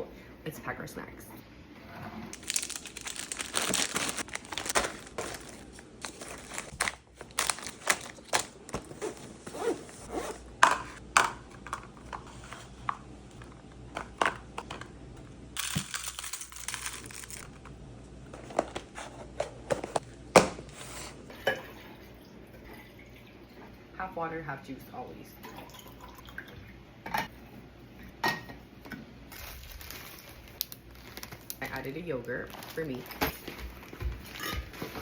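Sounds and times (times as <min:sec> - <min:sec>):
plastic packaging crinkling: 0:02.4 - 0:09.5, 0:15.6 - 0:17.5, 0:29.3 - 0:35.0.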